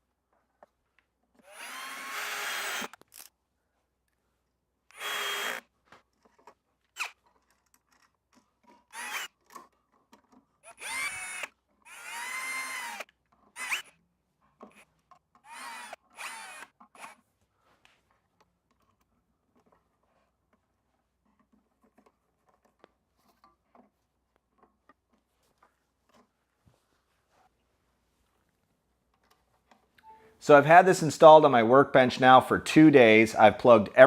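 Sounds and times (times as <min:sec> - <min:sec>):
power drill driving screws: 0:01.4 - 0:03.3, 0:04.9 - 0:05.7, 0:07.0 - 0:07.2, 0:08.8 - 0:09.6, 0:10.6 - 0:14.0, 0:14.7 - 0:17.2.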